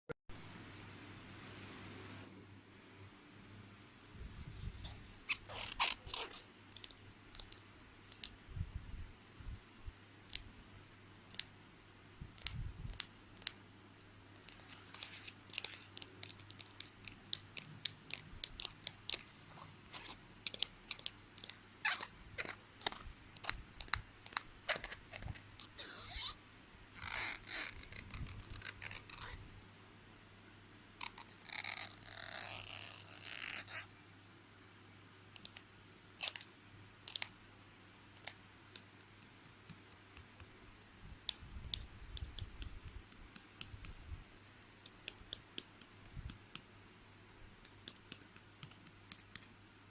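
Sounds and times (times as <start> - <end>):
scratchy rasping: 4.2 - 8.3, 14.4 - 26.4, 27.0 - 29.4
sharp clicks and taps: 41.2 - 44.0, 44.8 - 46.7, 47.6 - 49.5.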